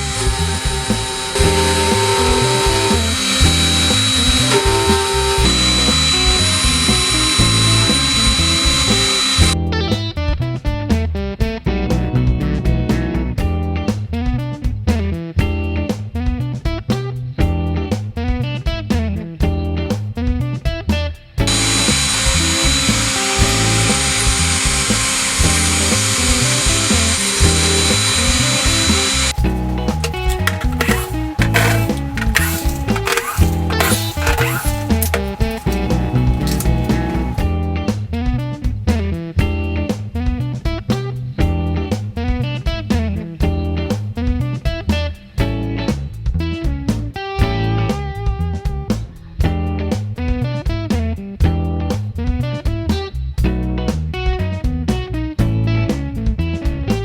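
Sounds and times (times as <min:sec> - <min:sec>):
cnc router spindle whining: 0:00.0 - 0:09.6, 0:21.5 - 0:37.5
wood cutting noise: 0:00.0 - 0:09.6, 0:21.4 - 0:37.6
background guitar music: 0:00.0 - 0:57.0.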